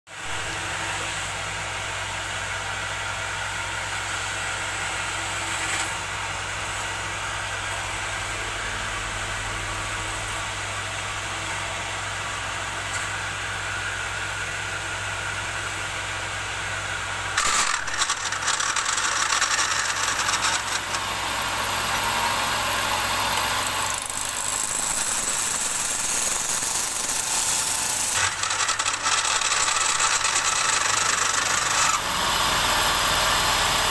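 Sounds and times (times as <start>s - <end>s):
tool scraping spinning wood: 17.3s - 33.0s
lathe motor humming: 17.3s - 33.9s.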